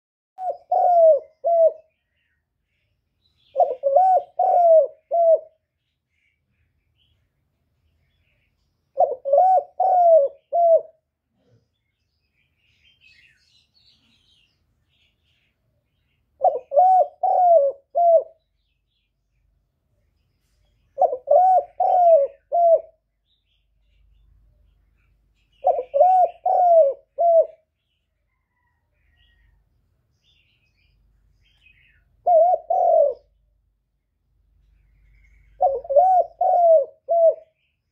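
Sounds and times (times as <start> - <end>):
dove cooing: 0.4 - 1.9, 3.4 - 5.6, 8.9 - 11.6, 16.4 - 18.4, 21.0 - 23.0, 25.5 - 27.7, 32.2 - 33.4, 35.6 - 37.6.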